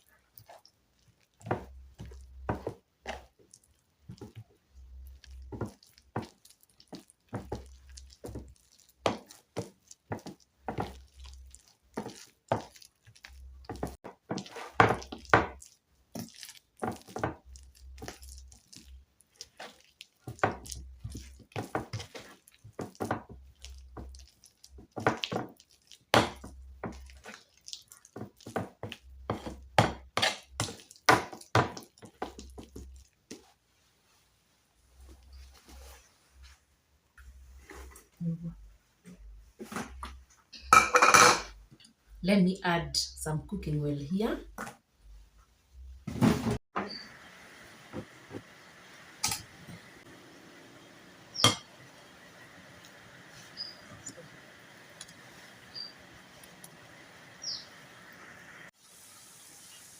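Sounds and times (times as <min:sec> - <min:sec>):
wet mixture squelching: 0:00.0 - 0:36.6.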